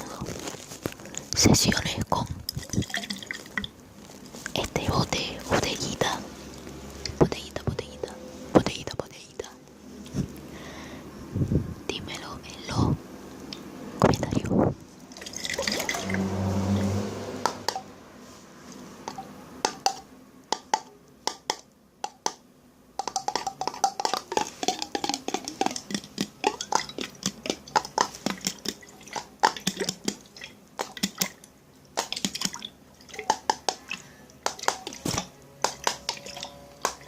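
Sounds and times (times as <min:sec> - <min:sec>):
liquid dripping and sloshing: 0:02.4 - 0:04.6, 0:15.0 - 0:16.4, 0:23.0 - 0:37.0
liquid pouring: 0:02.5 - 0:03.8, 0:15.1 - 0:16.3, 0:23.0 - 0:37.0.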